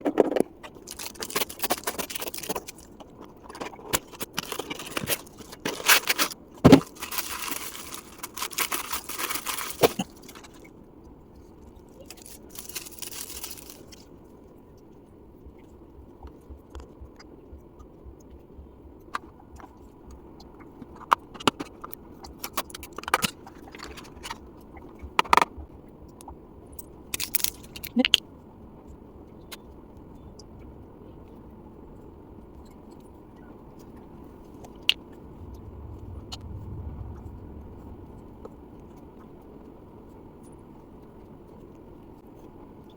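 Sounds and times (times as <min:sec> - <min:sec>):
items knocking and clicking: 0:00.0 - 0:02.6, 0:06.6 - 0:07.0
packaging rustling and crinkling: 0:03.4 - 0:10.6.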